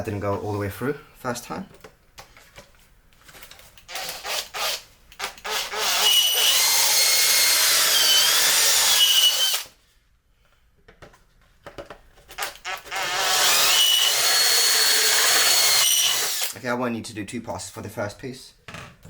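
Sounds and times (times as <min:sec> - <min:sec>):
power drill boring through plastic: 0:03.9 - 0:09.8, 0:12.4 - 0:16.6.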